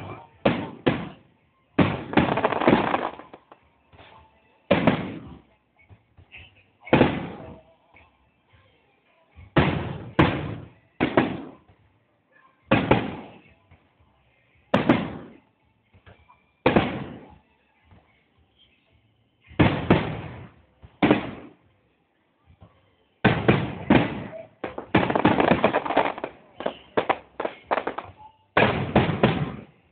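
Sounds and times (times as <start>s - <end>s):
fireworks bangs: 0.0s - 1.2s, 1.8s - 3.6s, 4.7s - 5.4s, 6.9s - 7.6s, 9.6s - 11.7s, 12.7s - 13.5s, 14.7s - 15.4s, 16.6s - 17.4s, 19.6s - 21.6s, 23.2s - 29.8s.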